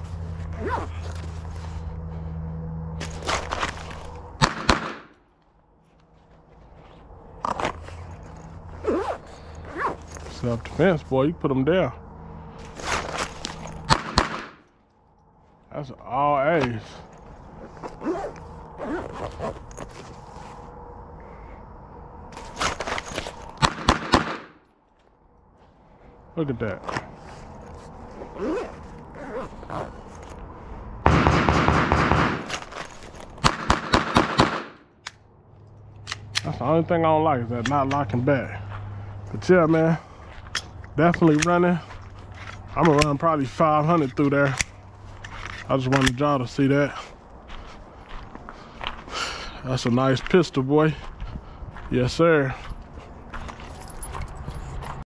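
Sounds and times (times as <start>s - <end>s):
rapid gunshots: 4.4s - 5.1s, 13.9s - 14.6s, 23.6s - 24.6s, 31.1s - 32.5s, 33.5s - 34.8s
pistol shots: 4.4s - 5.2s, 13.9s - 14.6s, 23.6s - 24.6s, 31.0s - 32.5s, 33.4s - 34.8s.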